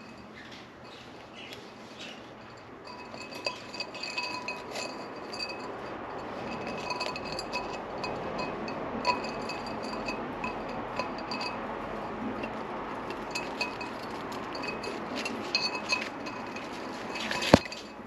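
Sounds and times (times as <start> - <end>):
vase ringing: 0.0 - 18.0
bird tapping inside vase: 2.9 - 11.6, 12.4 - 18.0.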